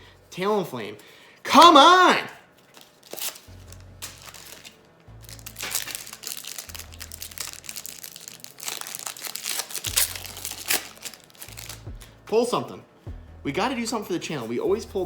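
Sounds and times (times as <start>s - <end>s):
foil wrapper crinkling: 2.5s - 12.1s
background music with bass: 9.9s - 15.0s.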